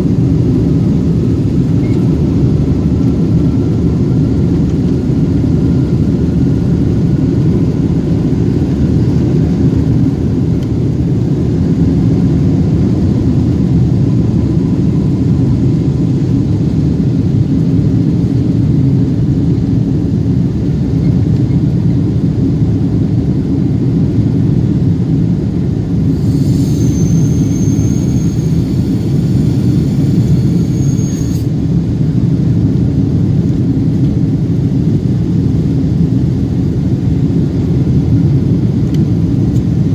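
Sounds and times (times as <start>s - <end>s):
jet engine and airflow rumble: 0.0s - 39.9s.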